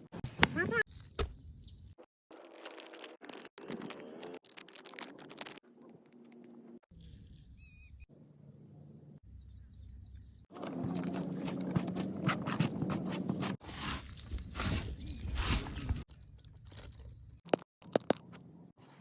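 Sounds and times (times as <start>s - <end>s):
faint outdoor background: 0.0s - 19.0s
bird chirping: 6.9s - 10.5s.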